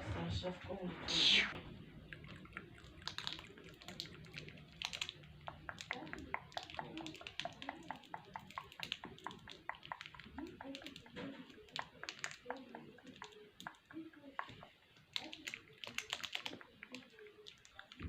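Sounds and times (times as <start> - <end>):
faint voice: 0.0 - 1.6.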